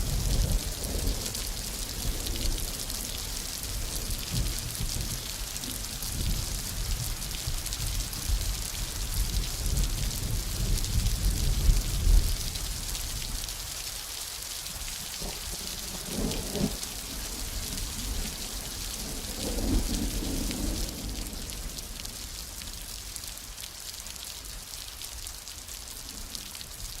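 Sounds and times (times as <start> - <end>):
low thunder rumbling: 0.0 - 12.4, 15.2 - 22.4
steady rain hiss: 0.0 - 27.0.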